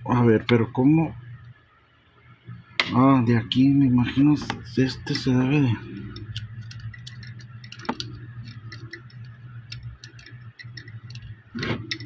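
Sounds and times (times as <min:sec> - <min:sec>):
steady low hum: 0:00.0 - 0:12.0
plastic parts clicking: 0:06.0 - 0:12.0.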